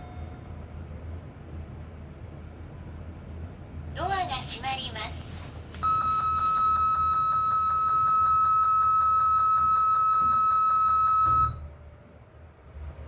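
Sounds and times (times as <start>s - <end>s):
elevator buzzer high tone: 5.8s - 11.7s.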